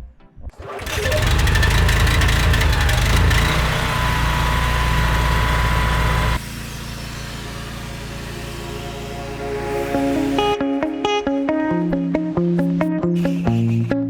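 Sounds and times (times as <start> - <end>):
pressure washer engine running: 0.6 - 10.4.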